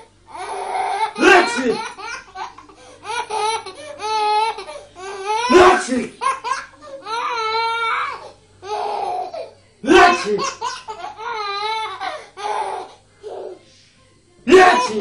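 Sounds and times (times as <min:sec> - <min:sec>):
baby laughing: 0:00.4 - 0:07.6
person sneezing loudly: 0:01.2 - 0:01.8, 0:09.8 - 0:10.6, 0:14.5 - 0:15.0.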